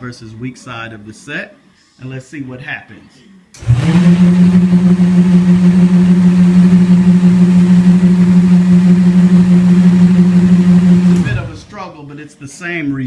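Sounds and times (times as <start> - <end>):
electric vibrating board buzzing: 3.6 - 11.7.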